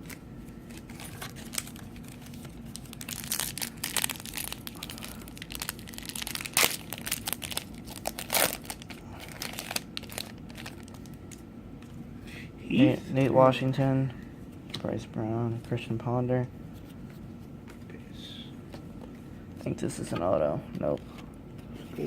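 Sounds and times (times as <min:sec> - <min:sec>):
card pack wrapper crinkling: 0:00.0 - 0:11.4.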